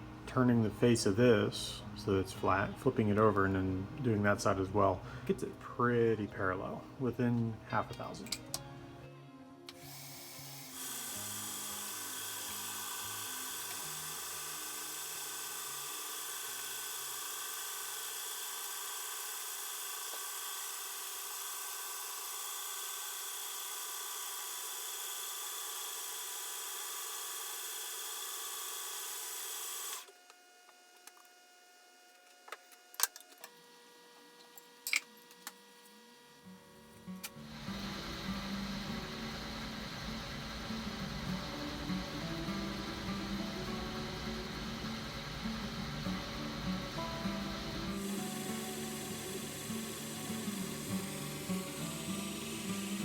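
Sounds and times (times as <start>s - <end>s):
metal lathe cutting: 9.8s - 30.1s, 37.4s - 53.0s.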